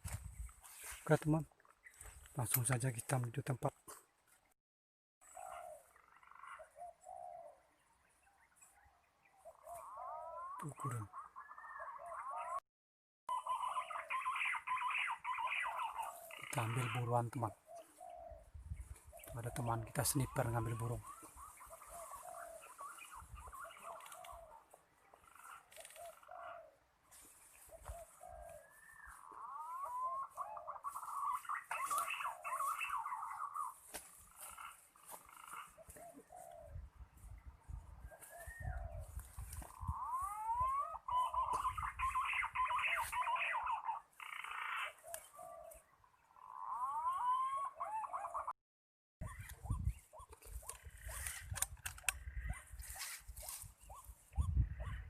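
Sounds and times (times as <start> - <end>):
birds whistling: 13.3 - 16.8, 19.1 - 24.6, 27.6 - 36.8, 38.1 - 48.5.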